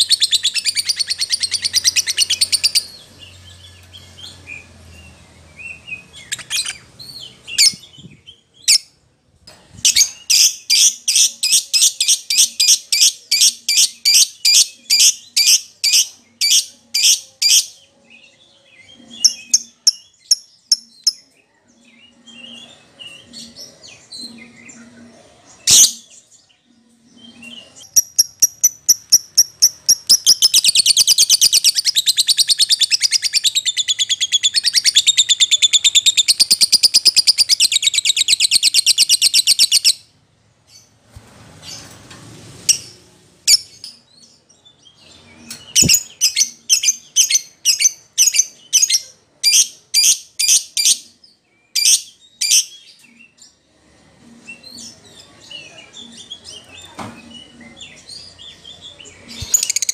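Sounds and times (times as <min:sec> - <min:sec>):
lovebird chirping: 0:00.0 - 0:08.9, 0:27.3 - 0:40.1, 0:45.0 - 0:51.1, 0:55.8 - 0:59.9.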